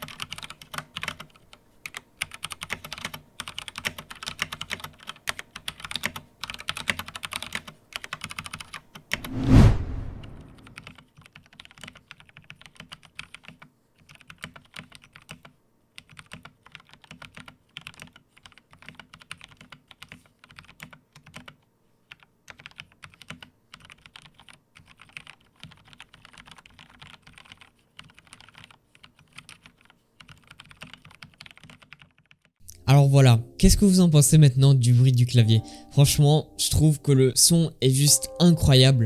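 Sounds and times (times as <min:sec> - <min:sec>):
mechanical keyboard typing: 0:00.0 - 0:08.9, 0:10.6 - 0:32.4.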